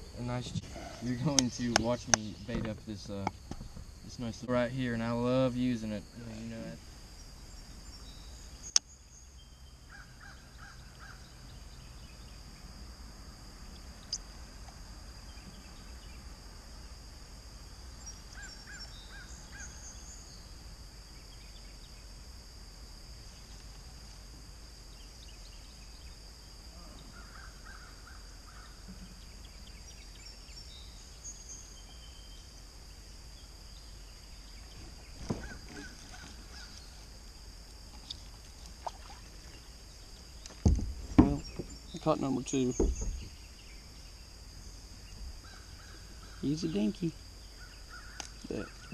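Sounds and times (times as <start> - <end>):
faint high background hiss: 0.0 - 48.9
bird calling: 18.0 - 20.2, 34.6 - 37.1, 45.4 - 48.9.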